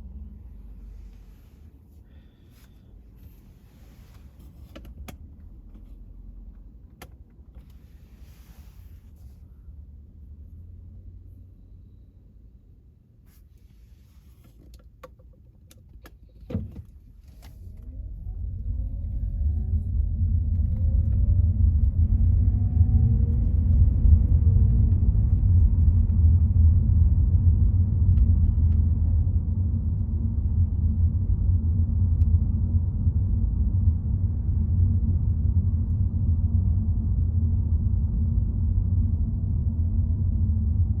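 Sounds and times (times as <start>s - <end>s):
car engine and road rumble: 0.0s - 41.0s.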